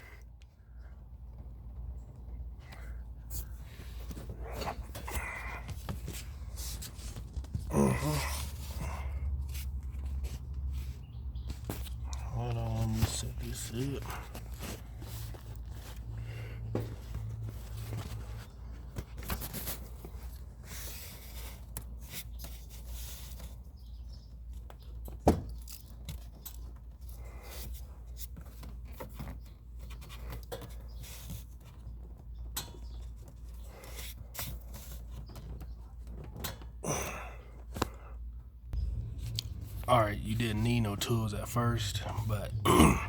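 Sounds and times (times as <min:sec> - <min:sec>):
handling scraping and rustling: 0:03.2 - 0:07.7, 0:09.4 - 0:36.8
steady low hum: 0:36.8 - 0:43.0.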